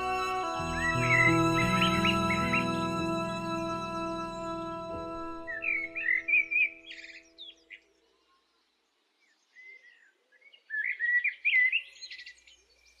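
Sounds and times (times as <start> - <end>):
soft held music: 0.0 - 7.0
bird chirping and twittering: 0.0 - 8.6.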